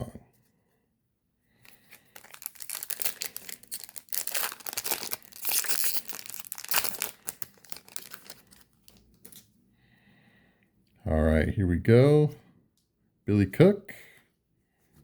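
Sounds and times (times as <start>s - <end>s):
wrapper crinkling and tearing: 1.6s - 9.4s.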